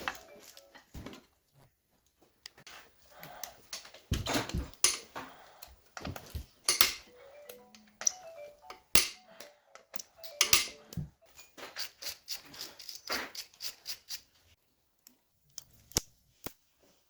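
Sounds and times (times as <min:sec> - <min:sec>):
metal tools clinking and knocking: 0:03.7 - 0:05.2, 0:06.6 - 0:07.2, 0:08.0 - 0:11.8.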